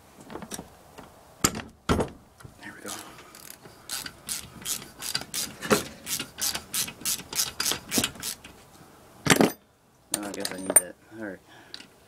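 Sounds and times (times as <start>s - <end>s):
socket ratchet clicking: 2.9s - 8.5s.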